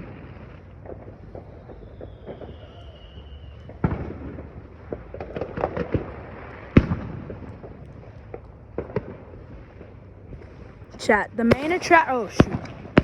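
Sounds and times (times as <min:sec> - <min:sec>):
crackling firework pops: 0:00.0 - 0:13.0
firework bangs: 0:00.0 - 0:13.0
firework whistle falling: 0:01.6 - 0:03.7.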